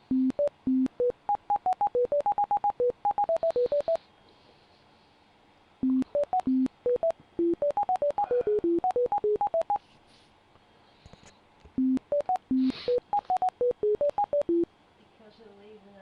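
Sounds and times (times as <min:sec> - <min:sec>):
short electronic beeps: 0:00.1 - 0:04.0, 0:05.8 - 0:09.8, 0:11.8 - 0:14.7.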